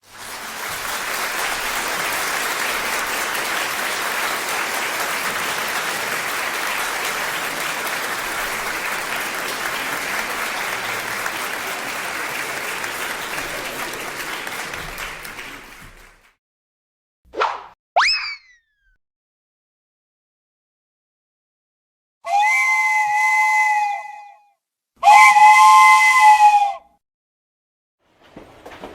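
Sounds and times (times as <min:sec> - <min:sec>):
crowd applause: 0:00.0 - 0:16.4.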